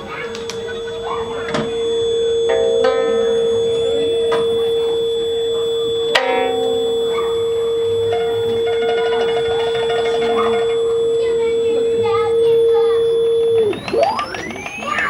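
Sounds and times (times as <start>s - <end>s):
plucked string notes: 0.0s - 11.2s
faint high electronic tones: 0.0s - 15.0s
steady electronic tone: 0.0s - 15.0s.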